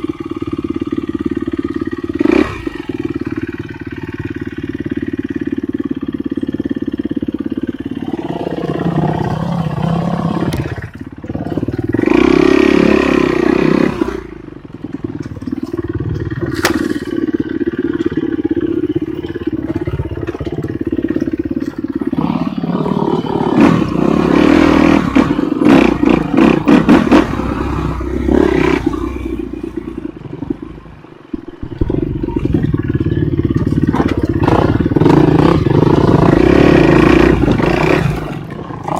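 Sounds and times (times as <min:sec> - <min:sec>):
motorcycle engine revving: 0:00.0 - 0:38.9
rattling clatter: 0:31.3 - 0:38.9.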